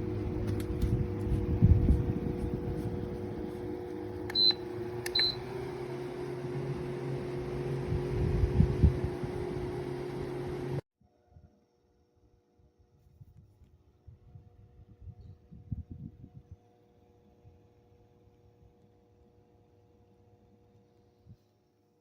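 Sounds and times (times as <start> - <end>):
window fan motor hum: 0.0 - 10.8.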